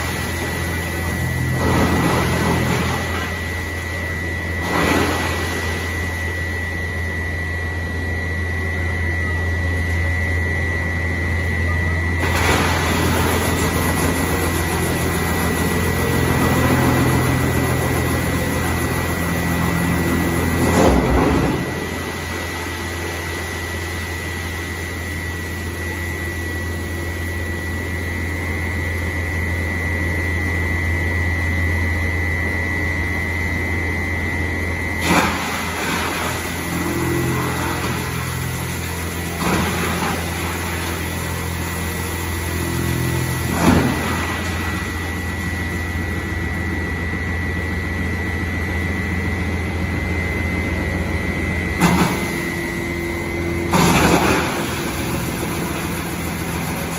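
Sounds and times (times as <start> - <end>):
wood chipper running: 0.0 - 56.9.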